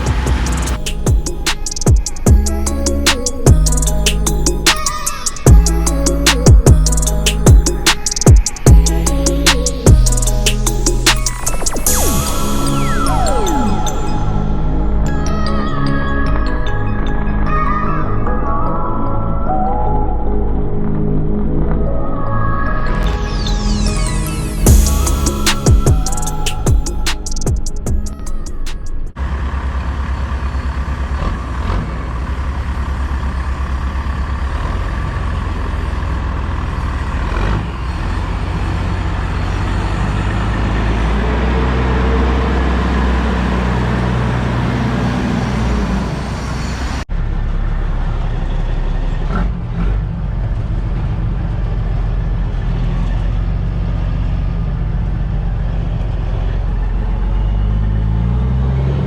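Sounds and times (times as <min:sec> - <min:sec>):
heavy diesel engine revving: 0:00.0 - 0:01.5, 0:29.2 - 0:59.0.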